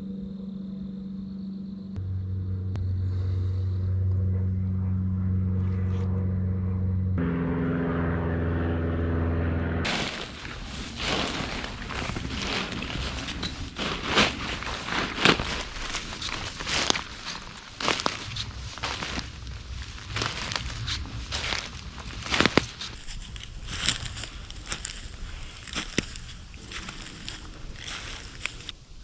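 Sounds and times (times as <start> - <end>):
low engine-like hum: 0.0 - 28.8
rustling and crackling: 9.8 - 28.8.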